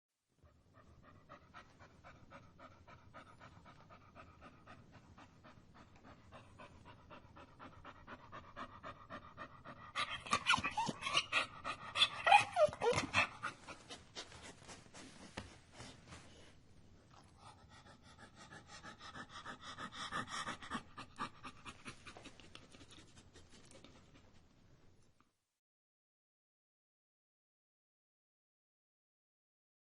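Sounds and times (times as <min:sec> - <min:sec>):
dog panting: 0:00.4 - 0:16.5, 0:17.1 - 0:24.4
dog crying: 0:10.0 - 0:13.8.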